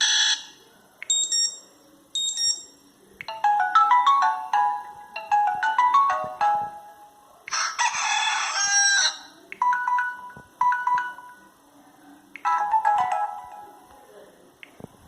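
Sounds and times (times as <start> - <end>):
rooster crow alarm tone: 7.5 - 9.3
chiming melody: 12.4 - 13.8.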